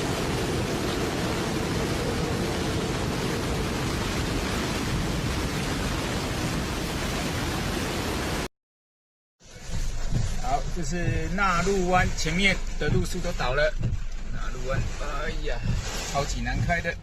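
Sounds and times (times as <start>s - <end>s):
driving rain: 0.0s - 8.5s, 9.4s - 17.0s
wind rushing: 0.0s - 8.5s.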